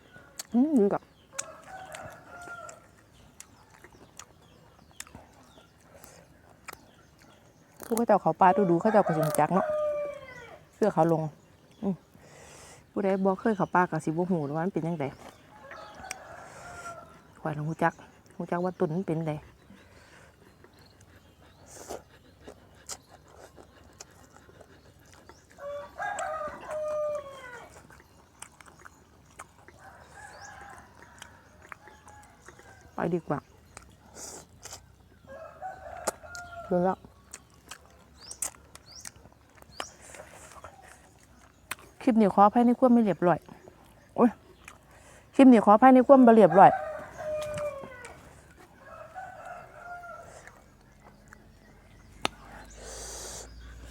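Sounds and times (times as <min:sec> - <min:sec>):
distant rooster crowing: 0:08.4 - 0:10.6, 0:15.6 - 0:17.2, 0:25.6 - 0:27.7, 0:29.8 - 0:32.8, 0:46.3 - 0:50.7
rooster crowing: 0:08.5 - 0:10.6, 0:15.6 - 0:17.1, 0:25.6 - 0:27.7, 0:46.4 - 0:50.6.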